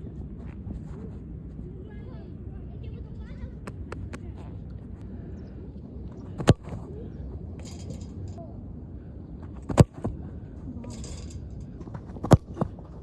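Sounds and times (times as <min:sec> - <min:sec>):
scratchy rustles: 0:00.2 - 0:01.7.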